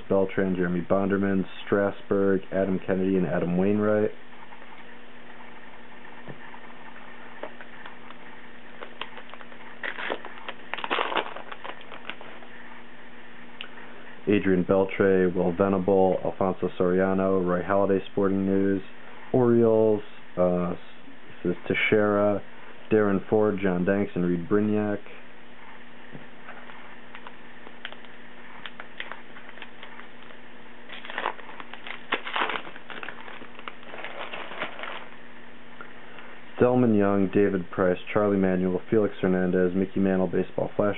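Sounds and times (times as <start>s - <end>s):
low electrical hum: 0.0s - 40.9s
cards rustling: 8.8s - 12.4s, 27.1s - 35.1s.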